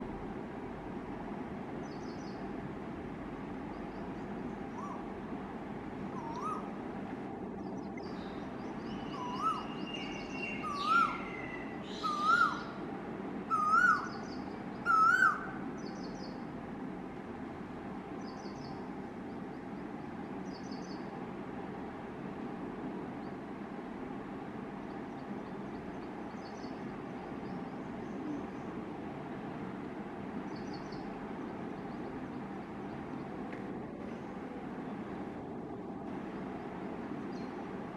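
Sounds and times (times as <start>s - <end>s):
steady background hum: 0.0s - 37.9s
small birds chirping: 1.8s - 2.5s, 6.1s - 6.7s, 7.6s - 12.8s, 18.2s - 21.1s, 24.8s - 28.8s, 30.4s - 33.4s.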